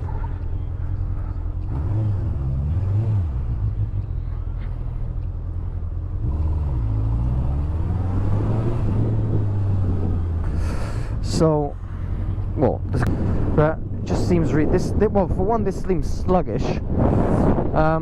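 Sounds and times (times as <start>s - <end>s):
motorcycle engine revving: 0.0s - 14.8s
wind rush: 7.8s - 18.0s.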